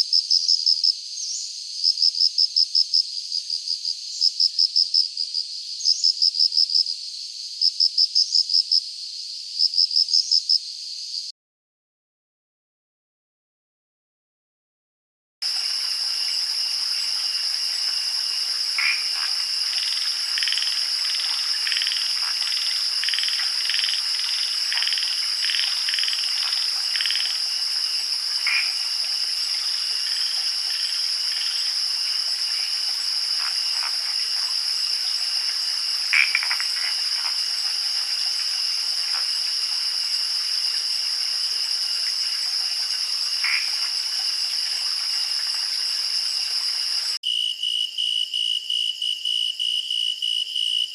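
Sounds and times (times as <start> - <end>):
insect chorus: 0.0 - 11.3, 15.4 - 50.9
frog calls: 15.6 - 46.6.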